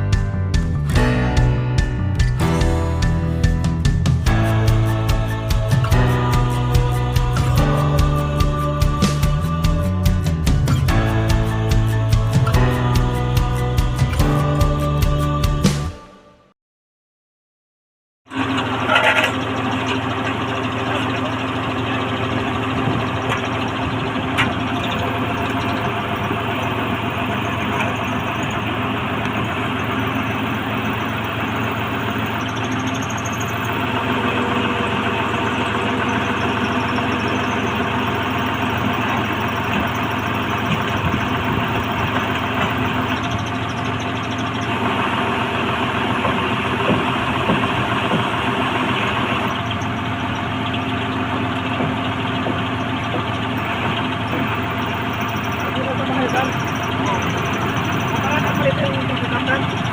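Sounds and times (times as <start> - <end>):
drilling rig engine running: 0.0 - 16.1, 18.3 - 59.9.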